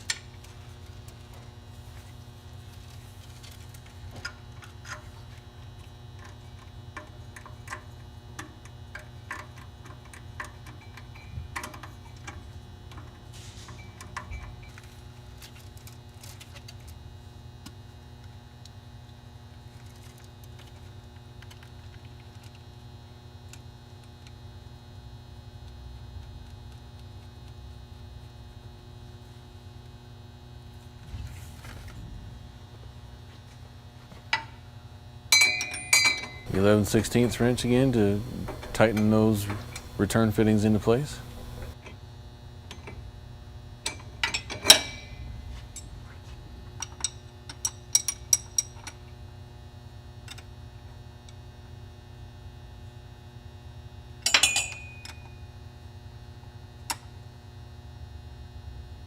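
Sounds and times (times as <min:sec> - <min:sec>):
clicks and taps of hose fittings: 0:06.2 - 0:11.0, 0:36.5 - 0:41.8
steady low hum: 0:28.3 - 0:35.0, 0:35.6 - 0:41.8.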